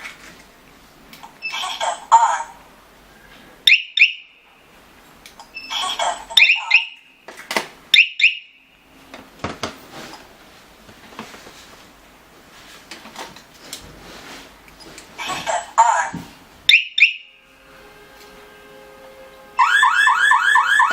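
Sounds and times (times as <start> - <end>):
alarm panel beeps: 3.7 - 4.2, 6.4 - 7.0, 8.0 - 8.5, 16.7 - 17.3.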